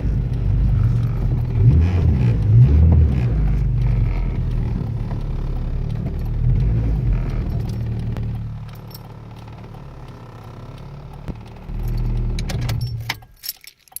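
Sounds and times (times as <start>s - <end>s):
car engine running: 0.0s - 13.4s
keys jingling: 12.8s - 14.0s.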